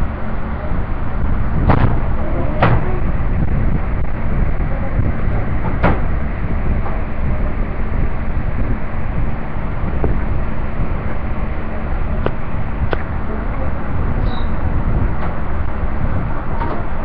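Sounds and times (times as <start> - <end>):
low rumbling background noise: 0.0 - 17.0
sharp knocks: 1.6 - 3.0, 5.6 - 6.1.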